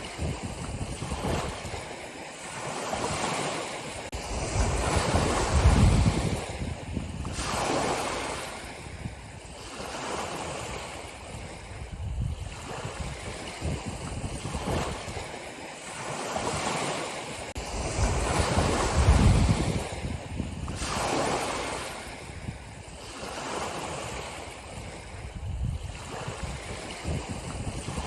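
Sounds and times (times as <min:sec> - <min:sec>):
ocean waves breaking on shore: 0:00.0 - 0:28.0.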